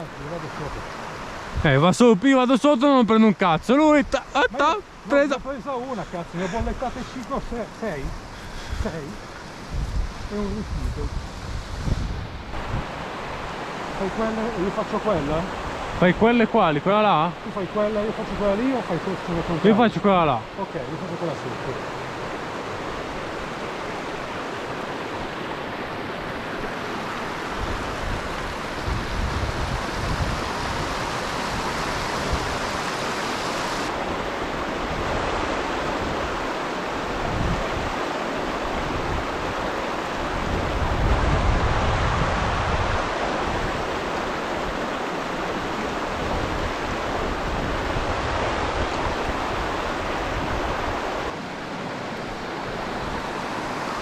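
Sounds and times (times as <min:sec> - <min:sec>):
mountain torrent rushing: 0:00.0 - 0:54.0
wind buffeting microphone: 0:06.1 - 0:14.0, 0:26.1 - 0:51.4.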